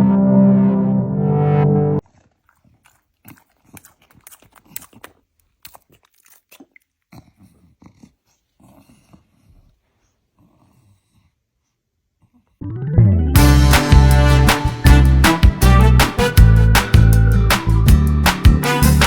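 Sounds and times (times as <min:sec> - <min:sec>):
dog chewing crunchy food: 0:02.0 - 0:07.5.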